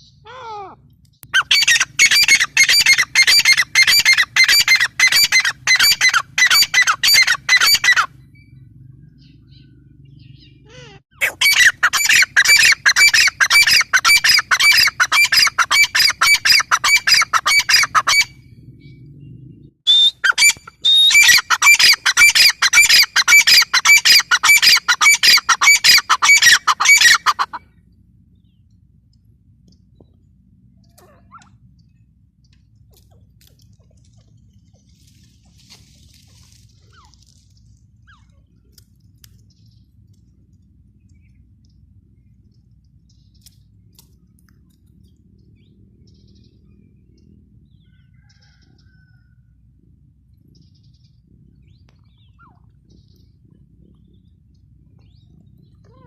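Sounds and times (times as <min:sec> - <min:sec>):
bird calling with harsh rapid notes: 0:00.0 - 0:19.0, 0:19.9 - 0:27.8.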